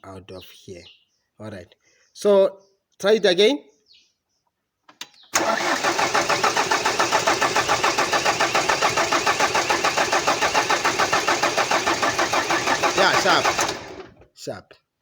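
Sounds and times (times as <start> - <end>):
starter cranking diesel engine: 5.4 - 14.2.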